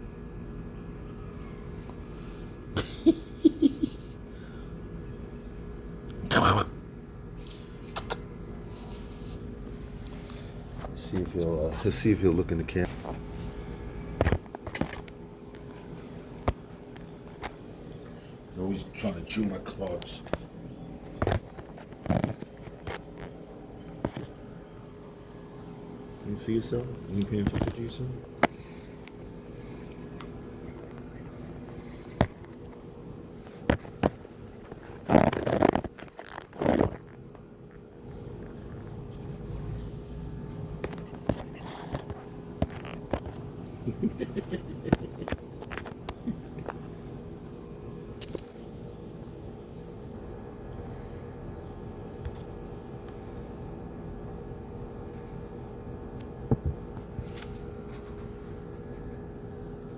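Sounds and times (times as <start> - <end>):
steady mechanical hum: 0.0 - 59.9
puppy pawing scratchy rustles: 57.0 - 59.6.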